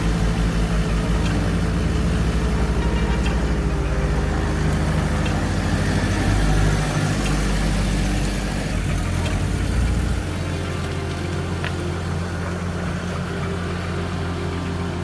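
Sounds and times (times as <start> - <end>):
car engine humming: 0.0 - 15.0
road noise: 0.0 - 15.0.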